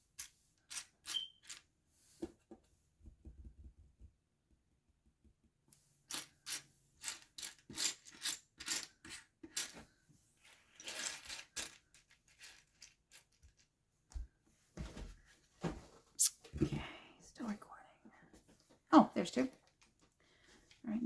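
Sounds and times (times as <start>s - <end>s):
pieces sliding and rustling: 6.1s - 13.7s.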